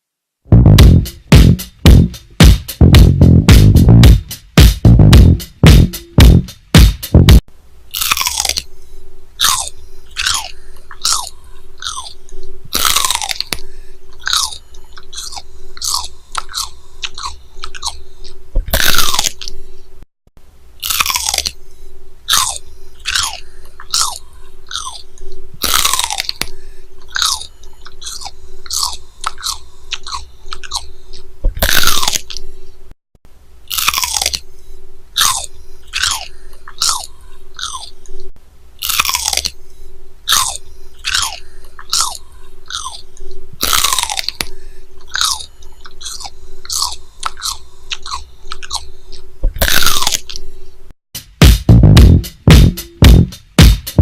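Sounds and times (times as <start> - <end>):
faint steady hum: 0.0 - 50.9
crunchy chewing: 7.9 - 8.7, 9.4 - 19.6, 20.8 - 21.6, 22.3 - 32.5, 33.7 - 34.5, 35.1 - 39.6, 40.2 - 50.6.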